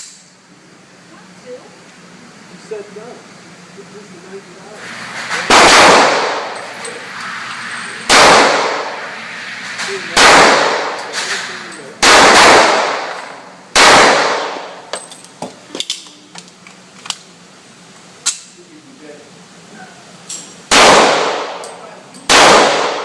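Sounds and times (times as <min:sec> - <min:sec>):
handgun shots echoing: 0:05.4 - 0:06.6, 0:08.1 - 0:09.0, 0:10.2 - 0:11.3, 0:12.0 - 0:14.8, 0:20.7 - 0:23.0.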